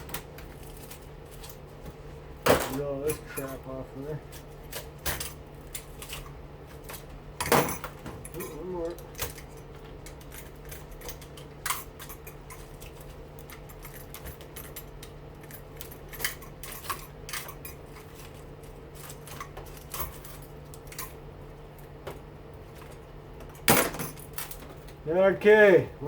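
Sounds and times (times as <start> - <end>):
steady low hum: 0.0 - 26.0
metal tools clinking: 2.5 - 21.2.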